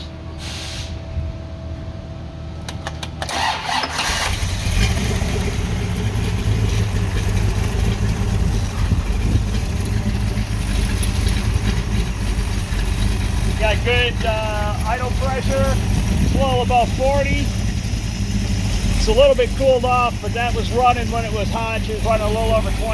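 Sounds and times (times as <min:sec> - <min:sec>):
car engine idling: 0:02.4 - 0:22.9
engine starter clicks: 0:02.6 - 0:07.4.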